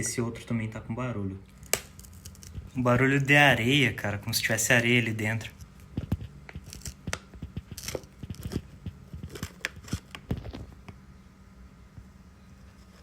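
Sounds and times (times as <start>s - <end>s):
gritty bolt crunching and clicking: 5.6s - 10.8s.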